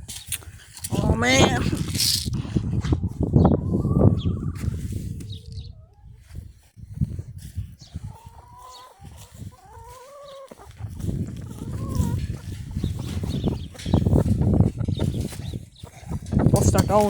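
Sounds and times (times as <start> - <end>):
chickens clucking: 3.2 - 6.4, 7.6 - 17.0.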